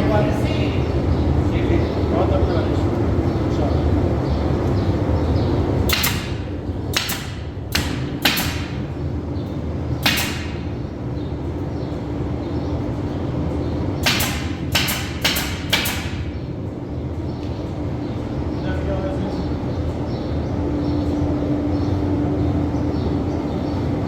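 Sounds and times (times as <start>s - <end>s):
hammer blows ringing: 5.9s - 8.9s, 10.0s - 10.8s, 14.0s - 16.4s.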